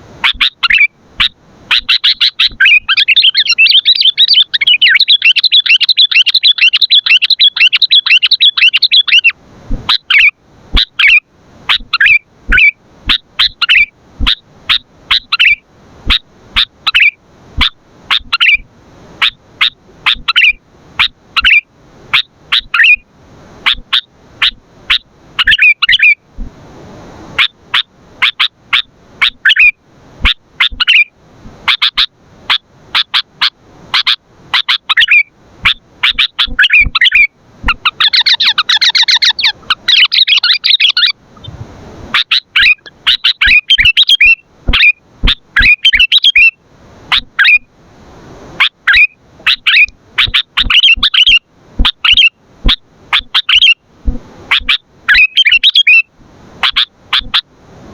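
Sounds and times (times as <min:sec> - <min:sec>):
bulbul chirping: 0:35.0 - 0:41.6, 0:42.2 - 0:46.5.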